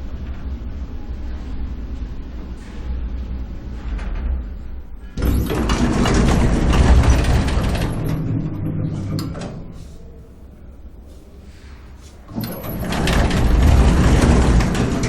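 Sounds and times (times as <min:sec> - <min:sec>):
elevator low hum: 0:00.0 - 0:15.0
elevator doors rattling: 0:03.2 - 0:10.2, 0:12.2 - 0:15.0
clicks: 0:09.0 - 0:09.6.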